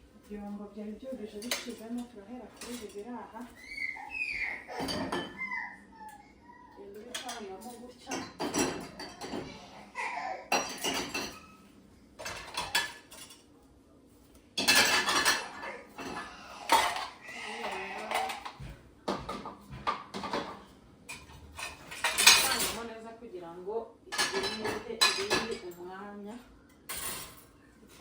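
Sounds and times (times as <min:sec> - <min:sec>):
dishes and cutlery clattering: 0:01.1 - 0:06.2, 0:06.8 - 0:13.5, 0:14.5 - 0:22.9, 0:24.1 - 0:25.8, 0:26.7 - 0:28.0.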